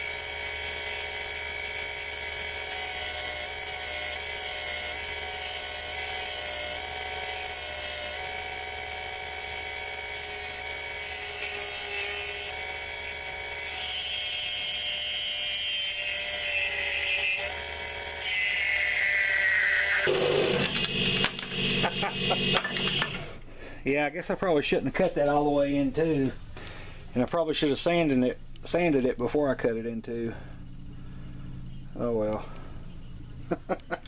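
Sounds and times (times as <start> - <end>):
lathe motor whine: 0.0 - 15.6, 16.8 - 23.4
tool cutting spinning wood: 0.0 - 23.4.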